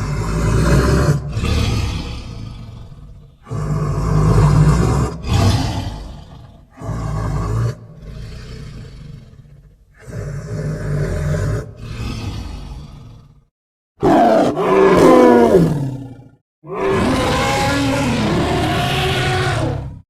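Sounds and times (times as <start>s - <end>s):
monster roaring: 0.0s - 9.2s, 14.0s - 20.0s
low rumbling growl: 0.0s - 13.5s.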